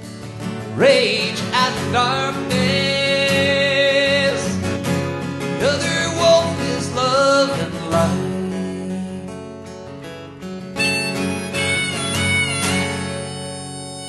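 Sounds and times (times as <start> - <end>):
acoustic guitar: 0.0 - 14.0
man singing: 0.7 - 4.9, 5.5 - 9.3.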